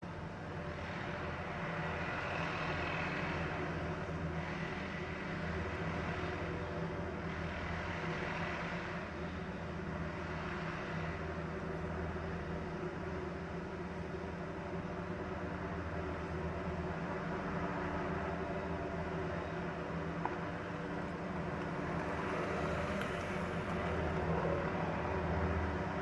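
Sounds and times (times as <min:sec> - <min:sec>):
machinery engine running: 0:00.1 - 0:26.0.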